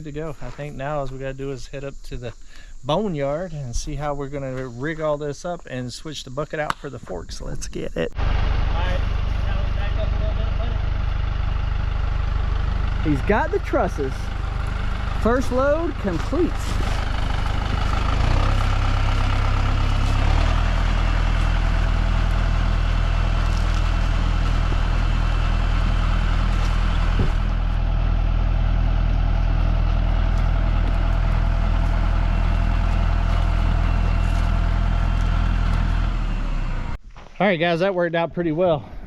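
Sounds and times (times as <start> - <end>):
tractor engine running: 8.1 - 37.0.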